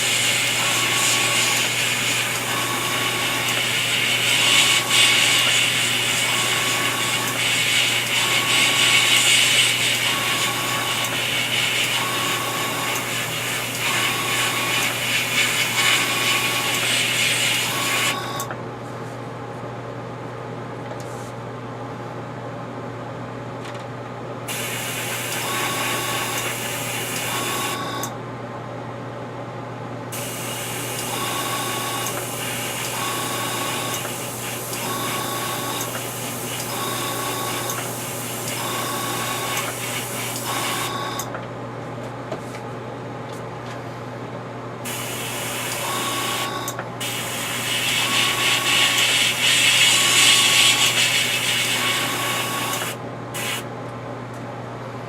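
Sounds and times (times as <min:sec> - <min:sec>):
compressor humming: 0:00.0 - 0:55.0
airbrush hissing: 0:03.2 - 0:18.2, 0:47.0 - 0:53.6.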